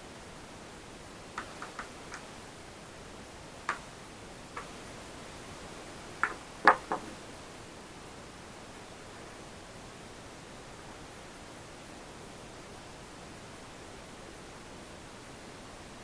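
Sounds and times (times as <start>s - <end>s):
steady hiss: 0.0s - 16.0s
clicks and taps of small parts: 1.4s - 2.2s.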